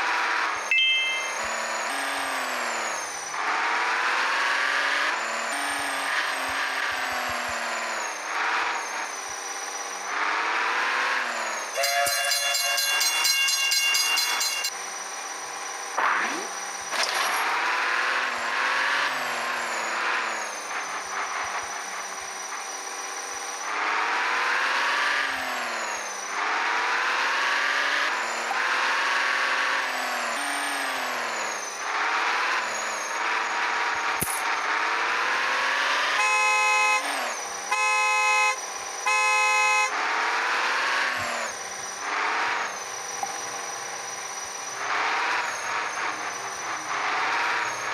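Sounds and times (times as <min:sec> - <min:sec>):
vehicle engine revving: 0:00.0 - 0:11.8, 0:15.5 - 0:47.9
car horn honks: 0:11.8 - 0:14.7, 0:36.1 - 0:40.0.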